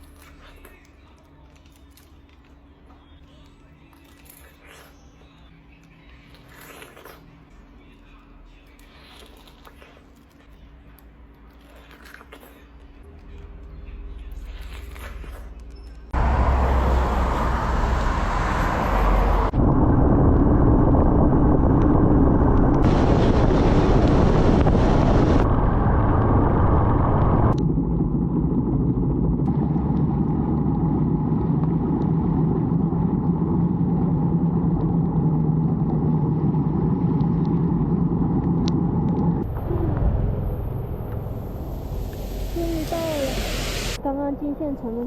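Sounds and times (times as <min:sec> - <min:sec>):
wind rush: 0:16.2 - 0:29.1
motorcycle engine hum: 0:16.2 - 0:44.0.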